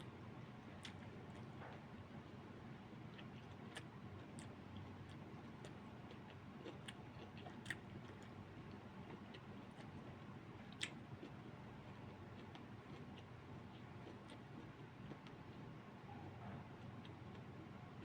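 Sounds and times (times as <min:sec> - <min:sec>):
low room hum: 0:00.0 - 0:18.0
person chewing: 0:03.1 - 0:08.4, 0:12.4 - 0:15.4.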